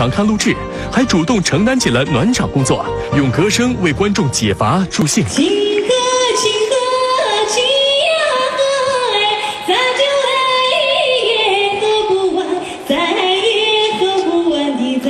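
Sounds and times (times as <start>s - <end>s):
woman singing folk style: 5.4s - 15.0s.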